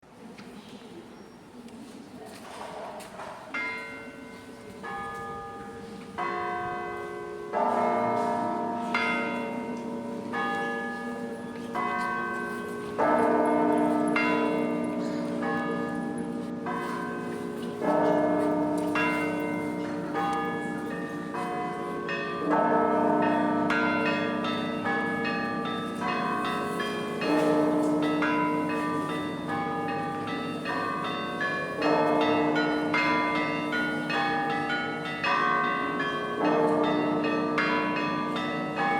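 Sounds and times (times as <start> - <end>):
large church bell struck: 3.2 - 38.9
small bells chiming: 8.9 - 38.9.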